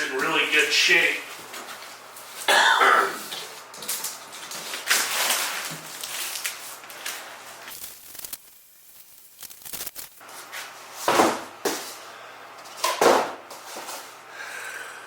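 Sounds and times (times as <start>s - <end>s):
cardboard ripping: 4.7s - 6.8s.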